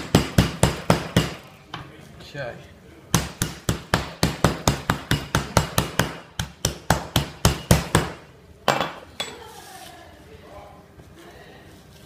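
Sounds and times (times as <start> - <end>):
meat mallet pounding meat: 0.0 - 1.5, 3.1 - 8.2.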